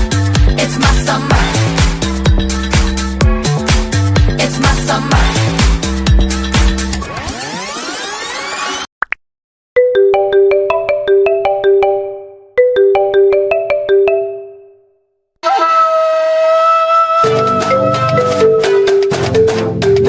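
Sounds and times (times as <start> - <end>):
synthesizer ringtone: 9.8 - 14.9, 17.3 - 20.0
ringtone melody: 9.8 - 15.0, 17.3 - 20.0.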